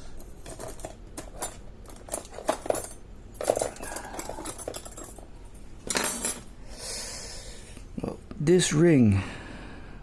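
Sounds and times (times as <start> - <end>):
small metal parts clinking: 0.2 - 6.5.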